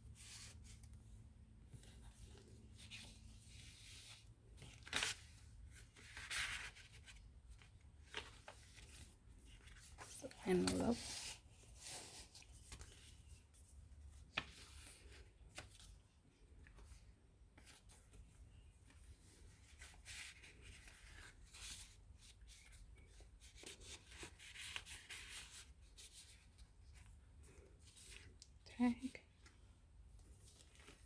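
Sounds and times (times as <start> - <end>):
paper rustling: 1.7 - 13.5.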